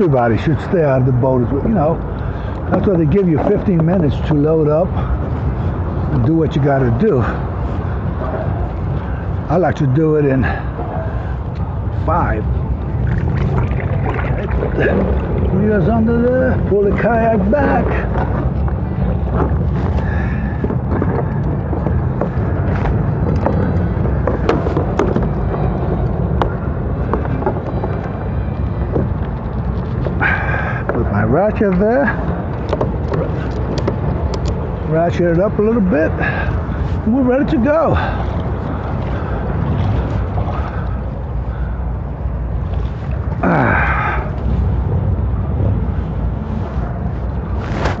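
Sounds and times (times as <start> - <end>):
wind rumbling on microphone: 0.0 - 48.0
kayak cart knocks and clicks: 17.0 - 31.1, 32.4 - 34.8.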